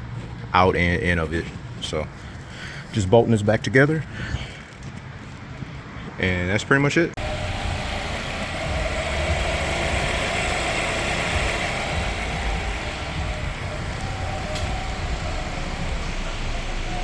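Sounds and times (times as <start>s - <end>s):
motor vehicle rumble: 7.1s - 17.0s.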